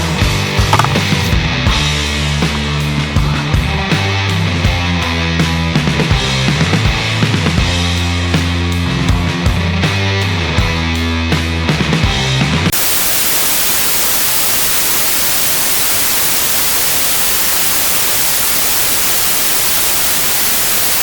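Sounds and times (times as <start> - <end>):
music: 0.0 - 12.7
loud static hiss: 0.7 - 1.2, 12.7 - 21.0.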